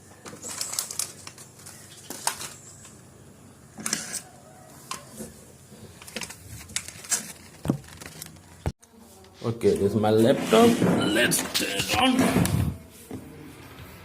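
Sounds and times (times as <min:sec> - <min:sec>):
plastic items clicking and rustling: 0:00.1 - 0:03.0, 0:05.8 - 0:08.7.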